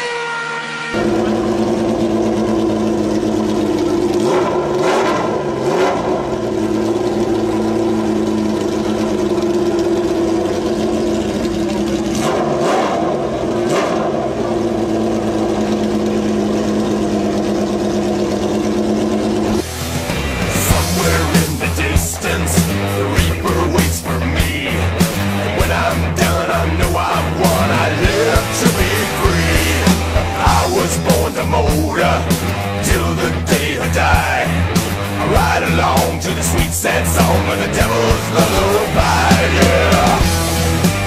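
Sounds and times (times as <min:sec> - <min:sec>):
motorcycle engine revving high: 0:00.0 - 0:41.0
rock music: 0:00.9 - 0:11.3, 0:19.3 - 0:41.0.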